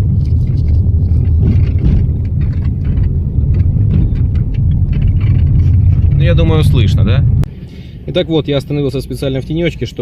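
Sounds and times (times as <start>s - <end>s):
road and engine rumble: 0.0s - 10.0s
car door creaking: 0.4s - 7.3s.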